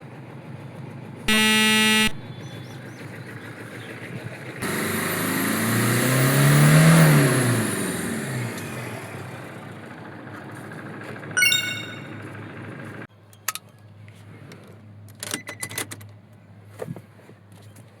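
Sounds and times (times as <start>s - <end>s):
loud steady beep: 1.3s - 2.3s, 11.4s - 12.2s.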